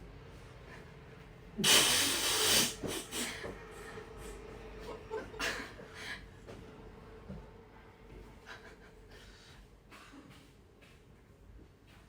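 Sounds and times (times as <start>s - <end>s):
loud breathy hiss: 1.6s - 3.4s.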